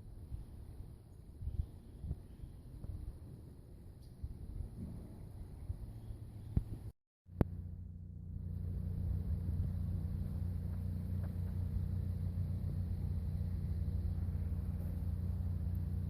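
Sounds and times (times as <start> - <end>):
van driving rumble: 6.2 - 16.0.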